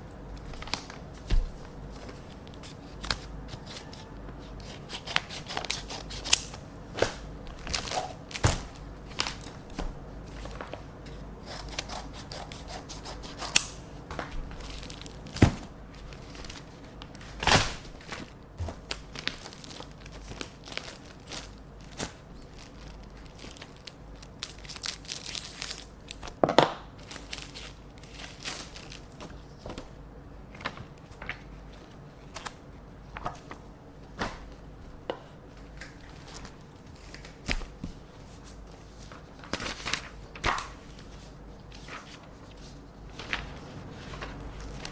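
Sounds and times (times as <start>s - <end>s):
paper tearing and crinkling: 0.4s - 9.7s, 11.4s - 13.7s
scissors snipping paper: 2.5s - 7.1s, 11.4s - 13.8s.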